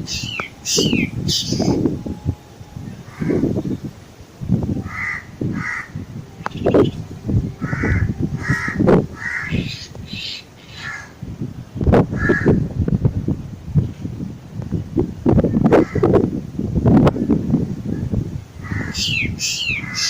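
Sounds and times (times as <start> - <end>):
low background rumble: 0.0 - 18.9.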